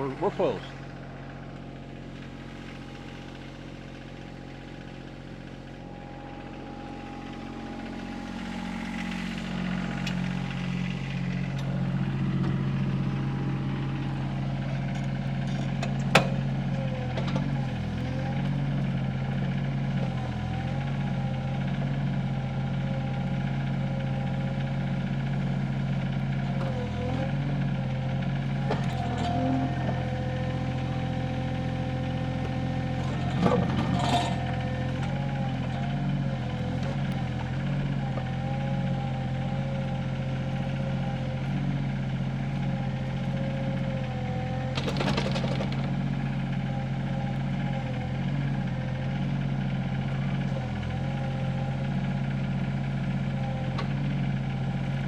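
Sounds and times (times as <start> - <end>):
excavator diesel engine: 0.0 - 55.0
hydraulic whine: 28.6 - 31.4.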